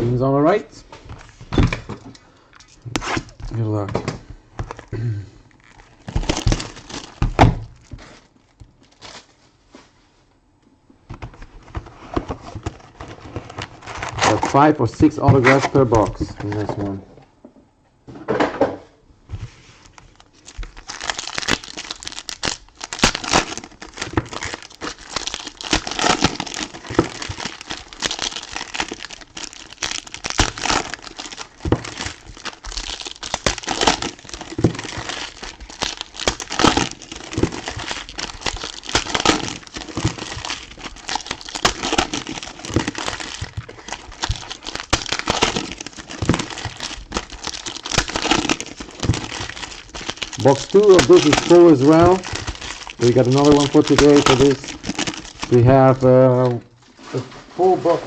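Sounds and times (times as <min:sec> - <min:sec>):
wrappers crinkling and tearing: 0:04.6 - 0:09.9, 0:11.8 - 0:16.9, 0:19.8 - 0:58.0
cards shuffling: 0:11.2 - 0:16.9, 0:23.0 - 0:55.6.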